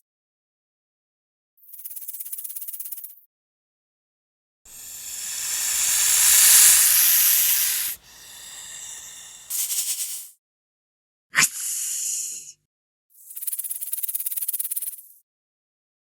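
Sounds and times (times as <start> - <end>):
snake hissing: 4.7 - 10.2.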